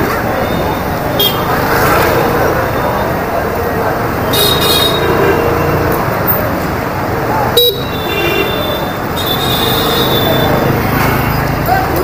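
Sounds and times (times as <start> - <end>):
scooter engine and road rumble: 0.0 - 12.0
high-pitched vehicle horns: 0.4 - 1.6, 4.2 - 6.0, 7.6 - 11.4.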